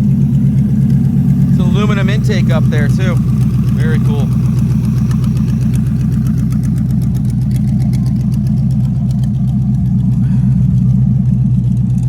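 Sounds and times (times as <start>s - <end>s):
engine idling with exhaust pulses: 0.0s - 12.0s.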